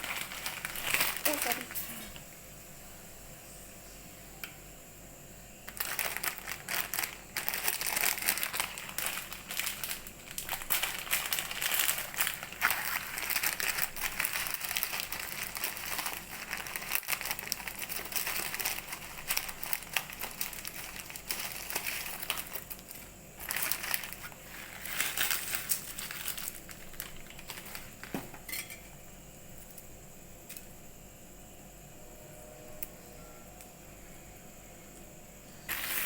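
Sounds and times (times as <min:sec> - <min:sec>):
plastic packets crinkling: 0:00.0 - 0:02.0, 0:05.7 - 0:28.5, 0:35.7 - 0:36.0.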